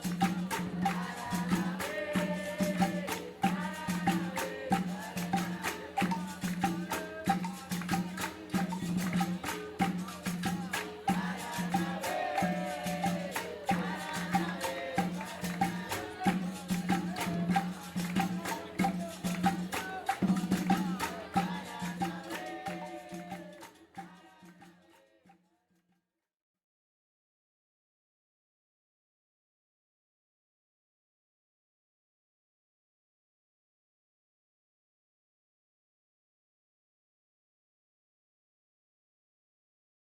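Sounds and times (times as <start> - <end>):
voices singing: 0.0 - 24.7
rattle and tambourine percussion: 0.0 - 25.2.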